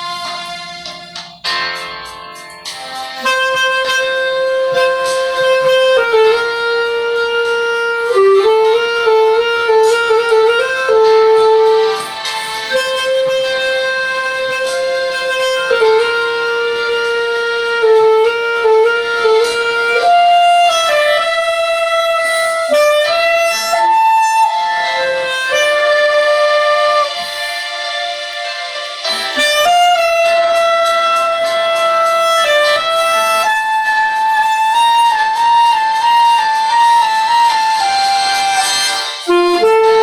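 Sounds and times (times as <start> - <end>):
recorded song from phone: 0.0 - 3.6, 11.0 - 12.7, 27.1 - 30.2
clarinet playing slow melody: 2.8 - 40.0.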